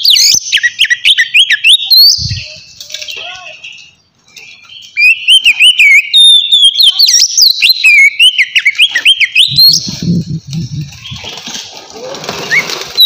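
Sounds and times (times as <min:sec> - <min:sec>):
bird singing whistled phrases: 0:00.0 - 0:10.0
low rustling rumble: 0:09.5 - 0:11.4.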